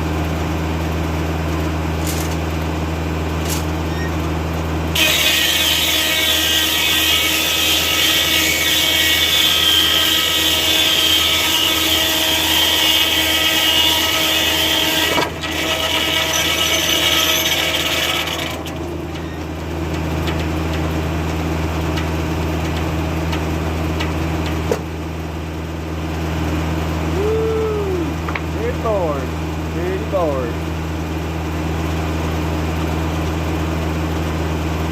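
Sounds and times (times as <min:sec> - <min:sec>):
tractor engine drone: 0:00.0 - 0:13.2, 0:14.0 - 0:34.9
sawmill blade cutting log: 0:04.9 - 0:18.9.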